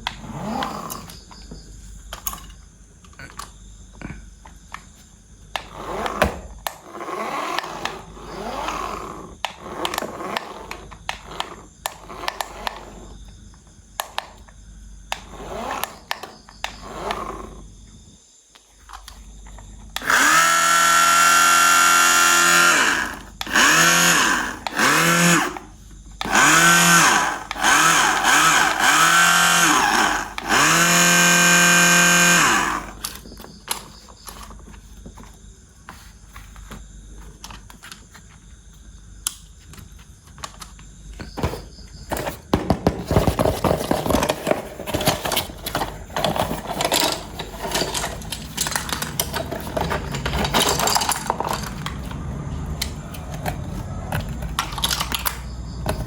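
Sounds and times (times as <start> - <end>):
toy pitched bursts: 20.0 - 33.0
plastic toy parts rattling: 43.0 - 56.0.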